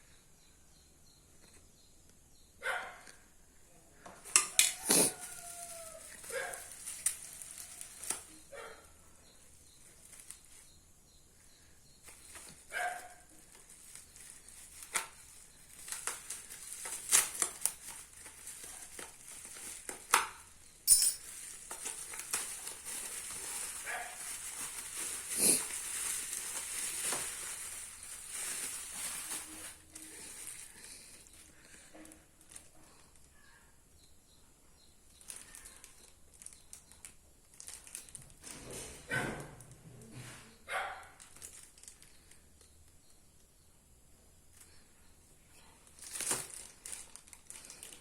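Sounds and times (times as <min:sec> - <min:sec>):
hands unboxing a package: 0:12.0 - 0:31.8, 0:45.9 - 0:48.0.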